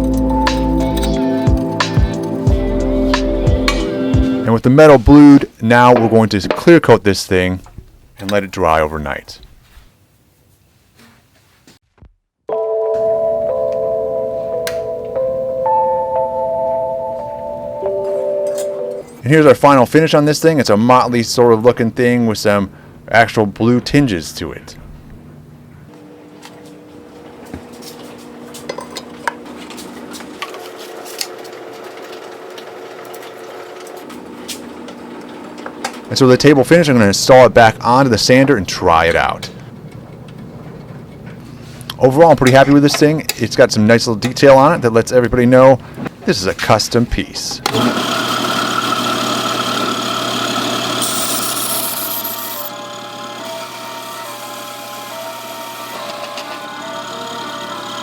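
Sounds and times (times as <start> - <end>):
belt sander running: 47.7 - 58.0.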